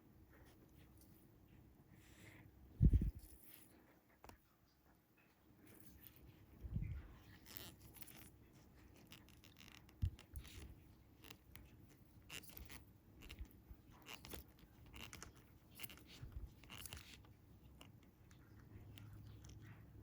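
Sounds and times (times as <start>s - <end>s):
fishing line scraping and crinkling: 5.6s - 19.7s.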